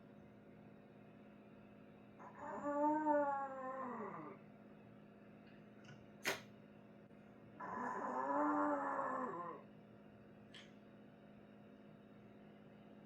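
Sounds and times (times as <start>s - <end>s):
sharp click: 6.2s - 6.5s
wavering animal calls: 7.6s - 9.6s.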